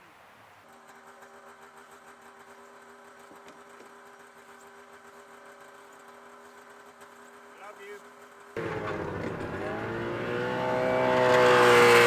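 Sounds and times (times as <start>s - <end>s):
low motor hum: 8.6s - 12.0s.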